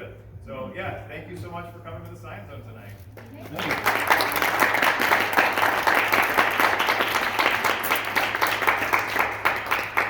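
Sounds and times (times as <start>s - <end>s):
audience applauding: 3.2s - 10.0s.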